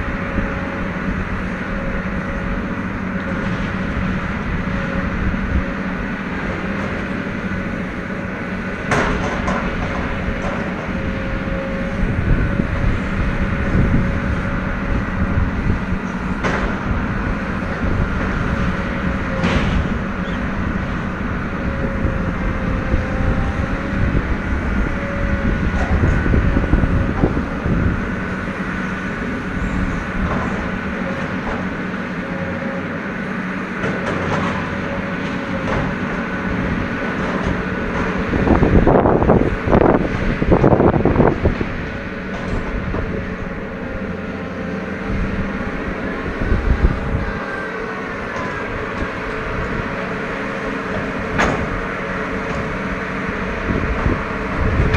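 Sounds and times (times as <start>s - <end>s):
diesel engine running: 0.0s - 54.9s
mechanical whine: 0.0s - 54.9s.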